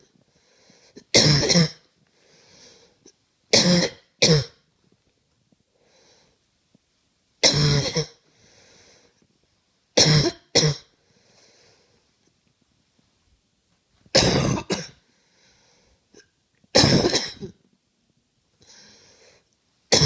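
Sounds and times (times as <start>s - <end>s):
faint breaths: 0.0s - 1.1s, 1.9s - 3.2s, 4.8s - 6.6s, 8.2s - 9.5s, 10.9s - 12.4s, 15.0s - 16.3s, 18.5s - 19.6s
person coughing: 1.0s - 1.8s, 3.5s - 4.6s, 7.4s - 8.2s, 10.0s - 10.9s, 14.1s - 15.0s, 16.2s - 17.6s.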